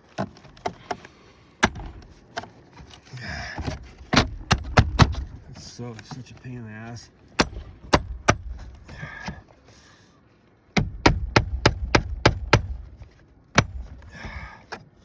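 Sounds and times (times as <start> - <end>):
hammer striking nail: 1.6 - 2.0, 4.1 - 5.2, 7.4 - 8.8, 10.8 - 13.0, 13.6 - 14.4.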